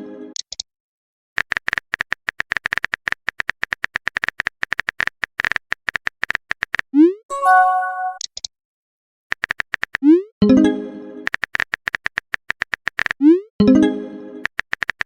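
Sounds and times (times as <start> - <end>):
phone keyboard tapping clicks: 11.3 - 13.2, 14.4 - 15.0.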